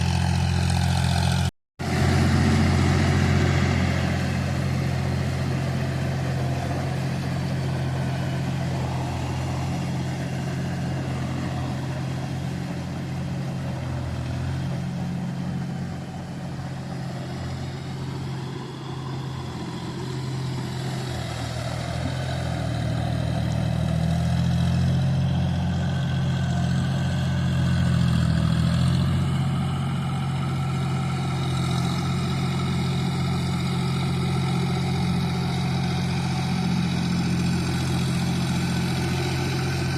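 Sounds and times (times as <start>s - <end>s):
tractor engine running: 0.0s - 39.9s.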